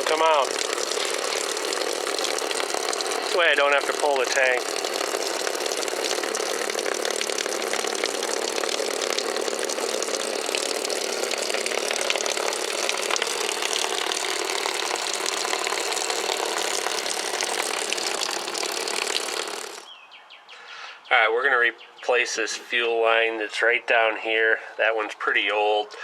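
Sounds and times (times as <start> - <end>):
electric fuel pump whirring: 0.0 - 19.9.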